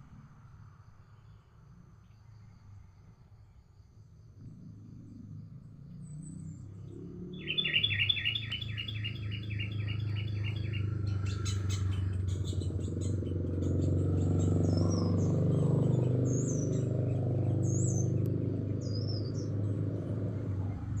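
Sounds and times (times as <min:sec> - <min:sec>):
bird chirping and whistling: 0:07.4 - 0:13.2.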